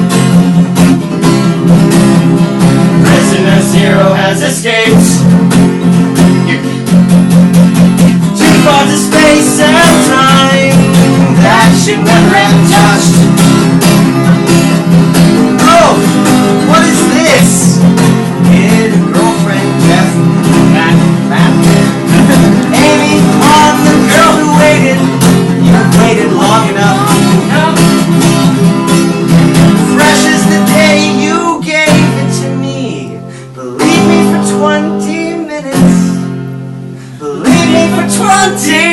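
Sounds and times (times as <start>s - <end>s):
acoustic guitar strumming: 0.0s - 38.9s
person singing: 3.0s - 5.3s, 8.2s - 13.4s, 15.5s - 28.8s, 29.7s - 36.2s, 37.1s - 38.9s.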